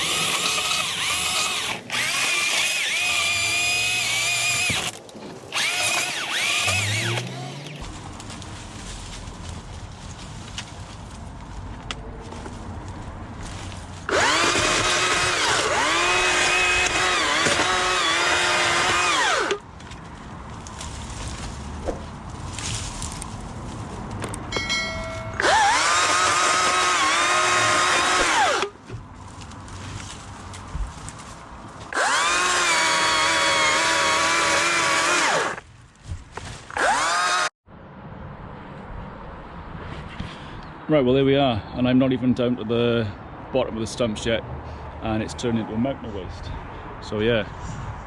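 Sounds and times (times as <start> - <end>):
chainsaw cutting wood: 0.0 - 7.9, 14.1 - 19.6, 25.4 - 28.8, 31.9 - 35.6, 36.7 - 37.6.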